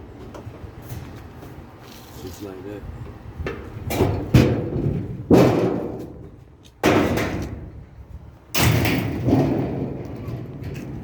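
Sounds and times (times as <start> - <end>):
sheet metal cabinet banging: 3.9 - 6.2, 6.8 - 7.8, 8.6 - 11.0.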